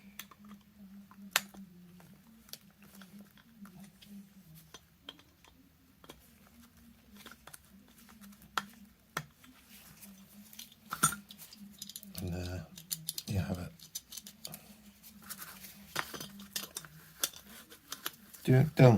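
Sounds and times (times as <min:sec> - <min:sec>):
faint low hum: 0:00.0 - 0:18.9.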